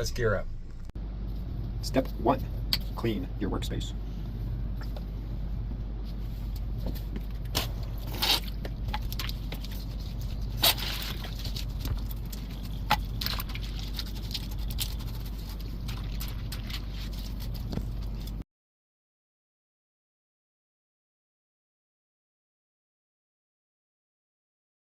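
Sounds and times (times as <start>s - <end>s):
steady low hum: 0.0s - 18.4s
scraping and rubbing: 6.0s - 18.4s.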